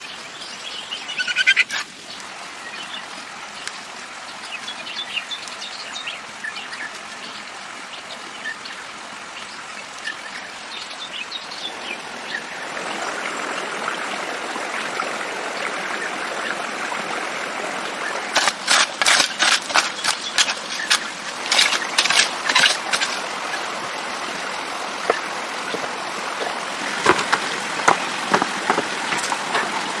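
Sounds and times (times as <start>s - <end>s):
birds chirping: 0.0s - 1.8s, 18.0s - 30.0s.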